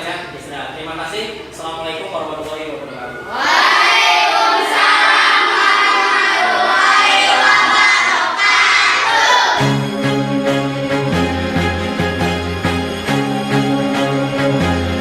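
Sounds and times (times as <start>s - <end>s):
children chanting in unison: 3.3s - 9.7s
background music with steady beat: 9.6s - 15.0s.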